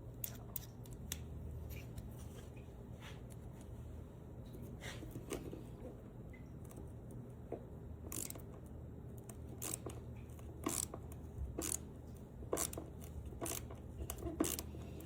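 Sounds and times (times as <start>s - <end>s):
hand ratchet clicking: 8.1s - 8.4s, 9.6s - 10.0s, 10.6s - 11.0s, 11.6s - 11.8s, 12.6s - 15.0s.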